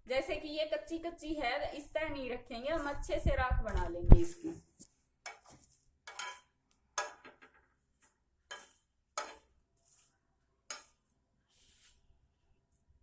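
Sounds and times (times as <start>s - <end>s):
utensil scraping on iron griddle: 5.2s - 7.3s, 8.5s - 11.9s.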